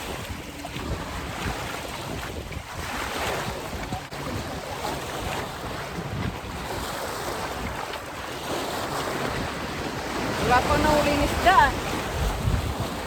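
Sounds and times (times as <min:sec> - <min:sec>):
wind blowing over microphone: 0:00.0 - 0:13.0.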